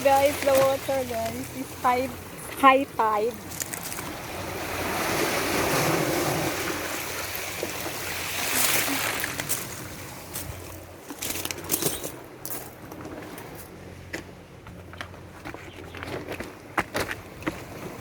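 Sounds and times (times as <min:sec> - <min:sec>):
sea waves washing onto shore: 0:00.0 - 0:10.9.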